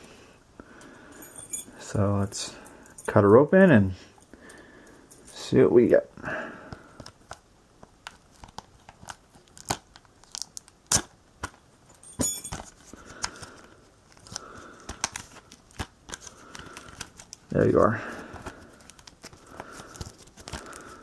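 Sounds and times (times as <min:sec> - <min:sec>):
plastic shrink-wrap crinkling: 0:08.0 - 0:11.1, 0:18.3 - 0:21.0.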